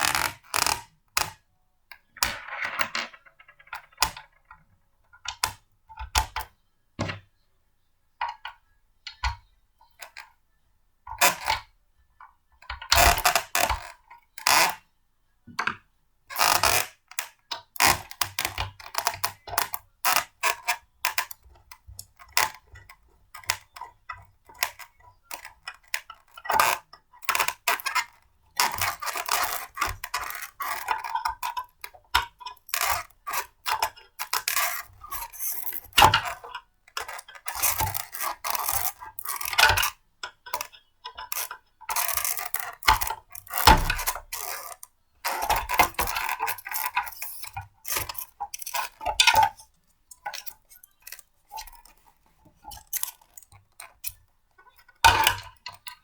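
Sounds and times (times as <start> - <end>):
blender parts clattering: 2.2 - 4.6, 40.6 - 49.6.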